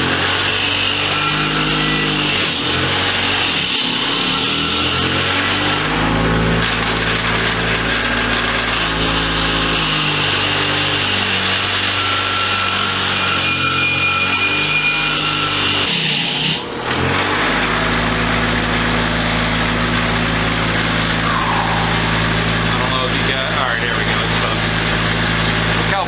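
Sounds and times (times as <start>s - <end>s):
wire wheel scratching metal: 0.0s - 15.9s
motor hum: 18.5s - 25.9s.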